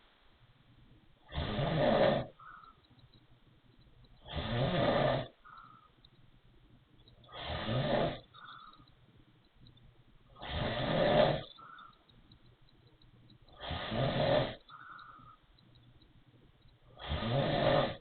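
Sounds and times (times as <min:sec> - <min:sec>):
rasping snores: 0:01.2 - 0:02.4, 0:04.2 - 0:05.4, 0:07.2 - 0:08.7, 0:10.3 - 0:11.6, 0:13.5 - 0:15.3, 0:16.9 - 0:18.0.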